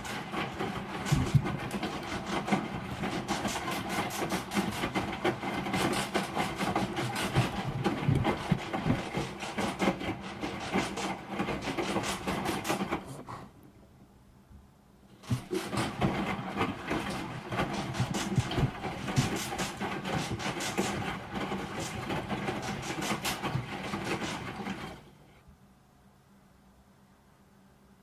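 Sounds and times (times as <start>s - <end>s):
washing machine rattling and knocking: 0.0s - 13.1s, 15.2s - 25.1s.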